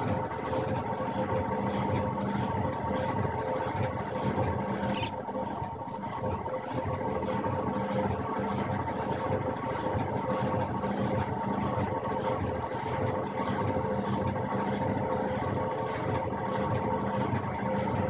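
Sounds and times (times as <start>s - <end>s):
washing machine spinning: 0.0s - 18.0s.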